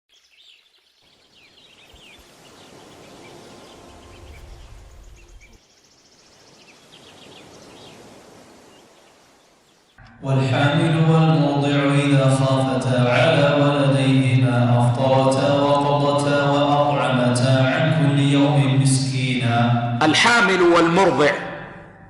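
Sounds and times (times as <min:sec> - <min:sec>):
birds chirping: 0:00.1 - 0:22.0
steady background hiss: 0:00.4 - 0:21.7
low rumble: 0:21.4 - 0:22.0.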